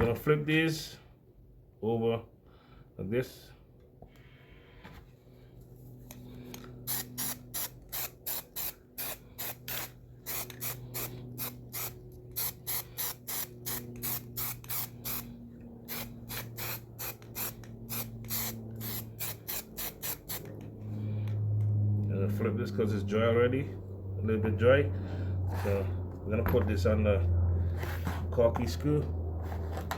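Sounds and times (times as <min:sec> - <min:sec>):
low steady hum: 0:00.0 - 0:29.9
aerosol can spraying in bursts: 0:06.8 - 0:15.3, 0:15.9 - 0:20.5.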